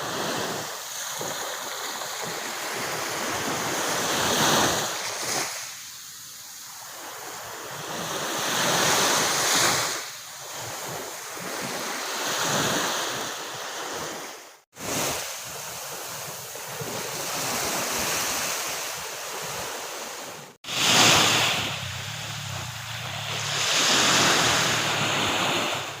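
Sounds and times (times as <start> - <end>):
ocean surf breaking: 6.9 - 26.0.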